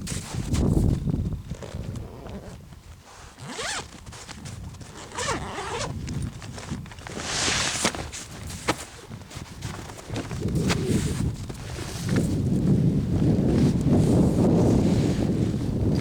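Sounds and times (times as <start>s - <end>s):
zipper pulled: 1.5s - 9.0s.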